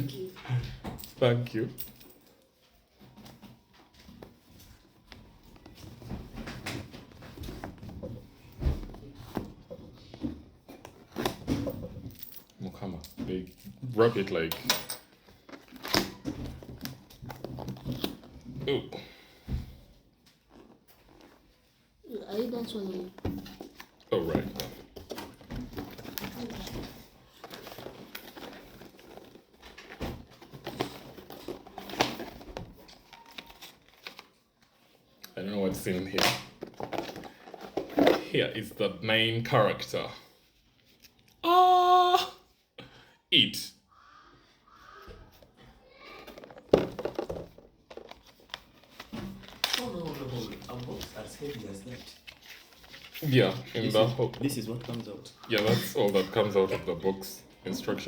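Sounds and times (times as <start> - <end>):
packaging rustling and crinkling: 15.1 - 18.6, 20.3 - 35.2, 35.8 - 38.3, 45.3 - 58.0.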